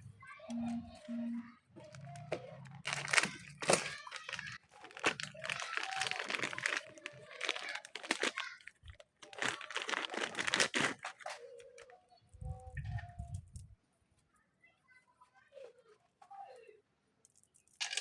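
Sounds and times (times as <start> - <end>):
crinkling and rustling: 1.7 - 13.7.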